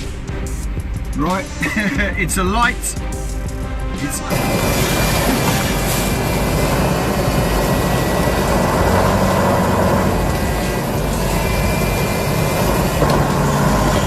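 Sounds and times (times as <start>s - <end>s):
heavy vehicle engine running: 4.2s - 14.0s
loud even rushing noise: 4.2s - 14.0s.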